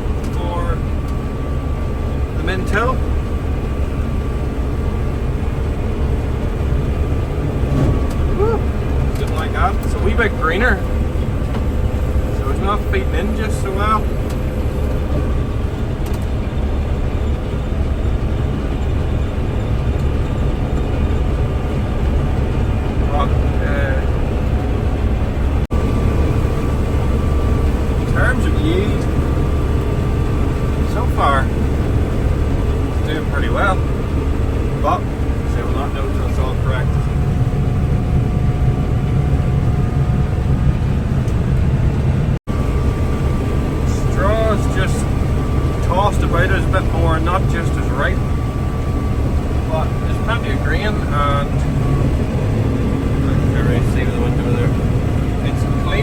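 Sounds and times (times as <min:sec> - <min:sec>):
combine harvester drone: 0:00.0 - 0:56.0
faint steady whine: 0:00.0 - 0:56.0.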